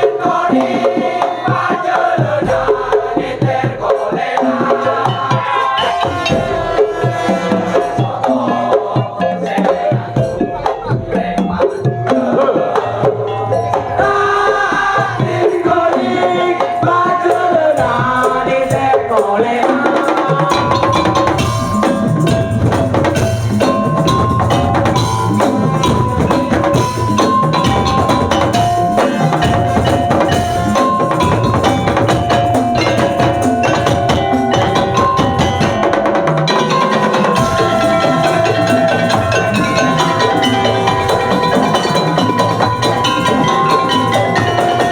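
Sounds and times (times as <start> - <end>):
wooden percussion and drums: 0.0 - 44.9
ensemble melody: 20.9 - 44.9.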